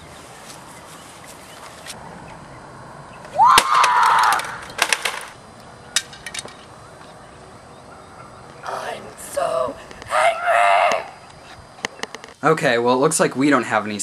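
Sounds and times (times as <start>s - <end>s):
person screaming: 3.4s - 4.6s, 10.1s - 11.2s.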